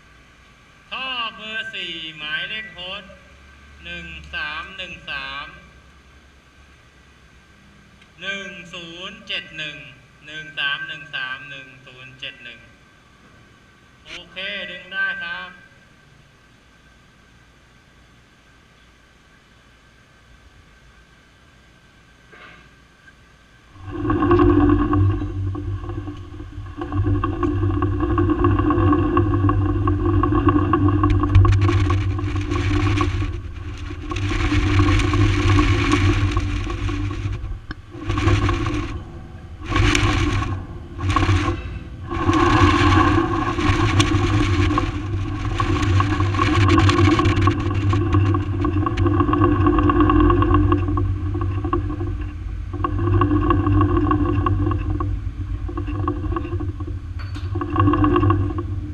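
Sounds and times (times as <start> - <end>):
machinery humming: 23.4 - 58.9
loud hissing surges: 23.7 - 56.9.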